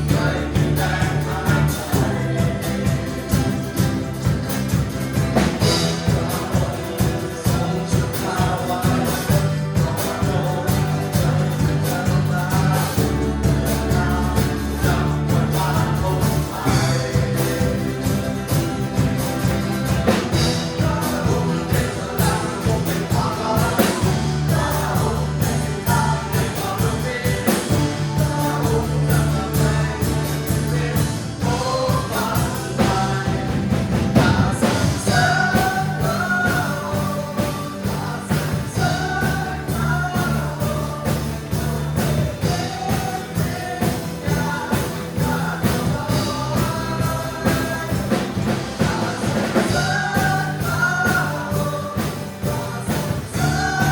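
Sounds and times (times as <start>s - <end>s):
bass and beat: 0.0s - 53.9s
congregation singing praise song: 0.0s - 53.9s.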